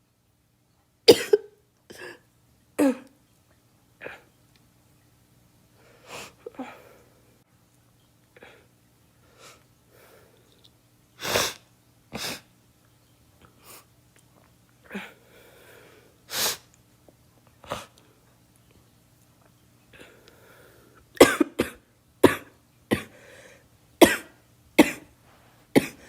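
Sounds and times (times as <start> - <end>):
girl coughing: 1.1 - 2.2, 2.8 - 3.1, 21.2 - 23.1, 24.0 - 25.1, 25.8 - 26.0.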